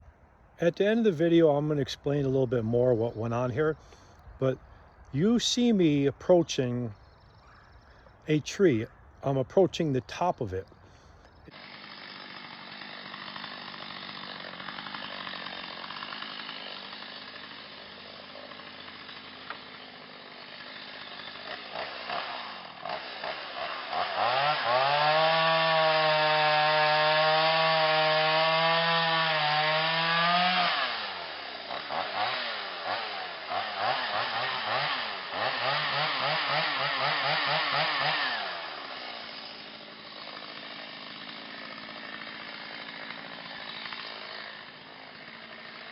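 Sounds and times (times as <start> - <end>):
chainsaw idling and revving: 10.2 - 45.9.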